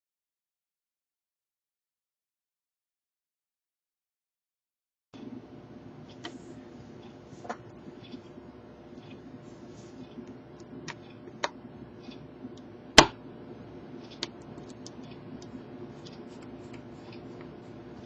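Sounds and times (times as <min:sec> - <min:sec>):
low steady hum: 0:05.2 - 0:18.0
faint clicks and taps: 0:10.0 - 0:12.7, 0:14.0 - 0:18.0.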